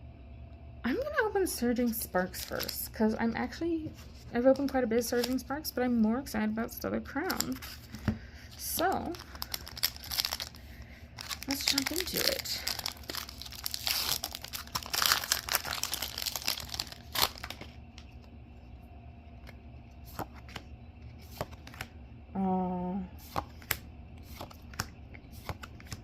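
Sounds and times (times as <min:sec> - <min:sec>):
foil wrapper crinkling and tearing: 0:02.3 - 0:02.8, 0:08.9 - 0:18.2
person humming: 0:22.4 - 0:23.1
cards clicking and tapping: 0:23.3 - 0:26.0.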